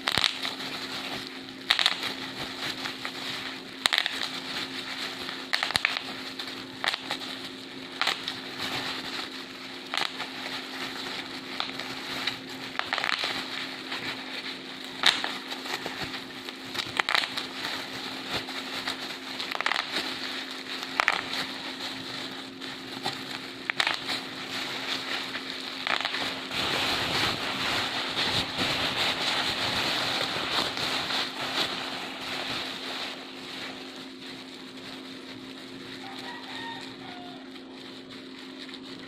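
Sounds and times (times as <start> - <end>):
bubble wrap crackling: 0.0 - 39.0
bubble wrap popping: 0.0 - 39.0.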